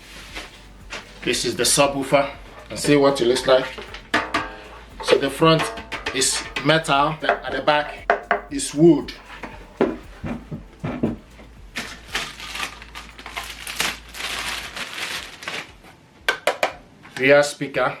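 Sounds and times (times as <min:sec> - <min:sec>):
plastic packaging crinkling: 0:09.1 - 0:16.0.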